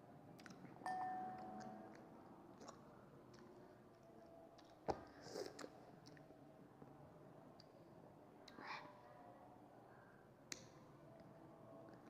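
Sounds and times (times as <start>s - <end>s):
faint chewing candy: 0.3s - 0.8s, 1.8s - 6.4s
short ringing tone: 0.9s - 1.9s.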